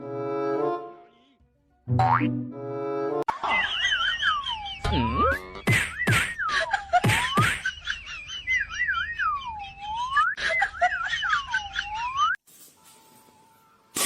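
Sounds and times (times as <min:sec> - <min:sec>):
whistled tune: 0:08.5 - 0:10.4.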